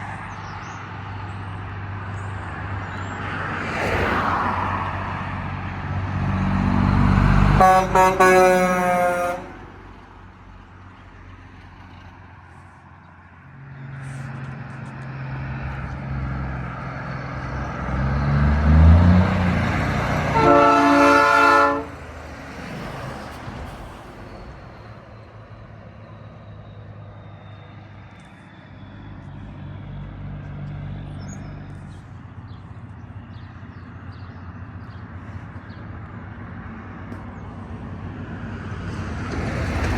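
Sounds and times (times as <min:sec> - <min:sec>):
diesel truck engines passing: 0:00.0 - 0:39.9
truck train horn blasts: 0:07.4 - 0:09.8, 0:20.0 - 0:22.0.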